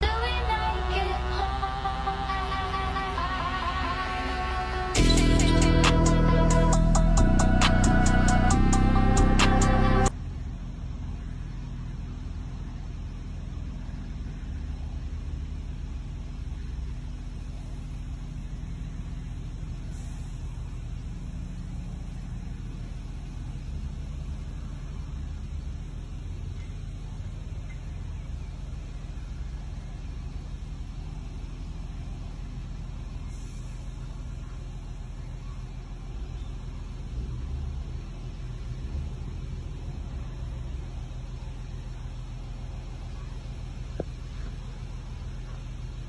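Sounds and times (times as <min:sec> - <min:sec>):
large engine rumbling: 0:00.0 - 0:46.0
faint hiss: 0:16.2 - 0:46.0.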